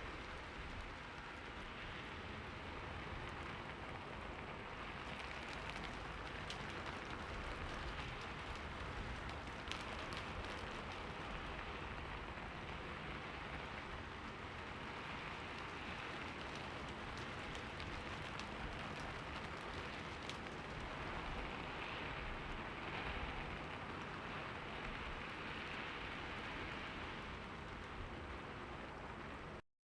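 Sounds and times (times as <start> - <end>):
raindrop ticks: 4.7 - 21.5.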